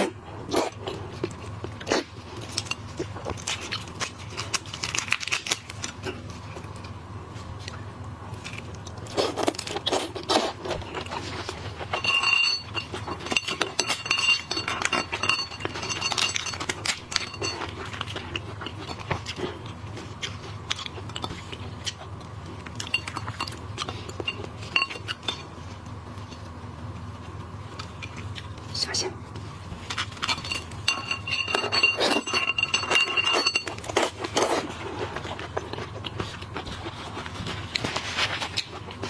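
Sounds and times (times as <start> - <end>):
steady low hum: 0.0 - 39.0
dishes and utensils clinking: 11.0 - 19.4, 22.8 - 25.5, 29.9 - 36.4.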